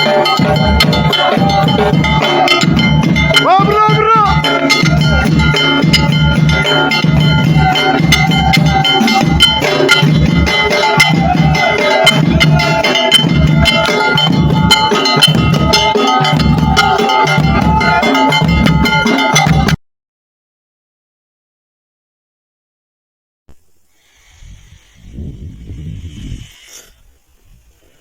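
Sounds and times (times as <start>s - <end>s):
sustained melodic tones: 0.0s - 19.7s
low drum beat: 0.0s - 19.8s
sharp percussion clicks: 0.0s - 19.8s.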